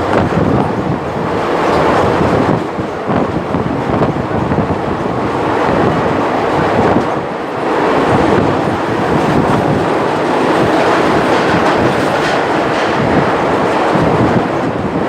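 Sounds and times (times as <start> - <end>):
train rumbling on rails: 0.0 - 15.0.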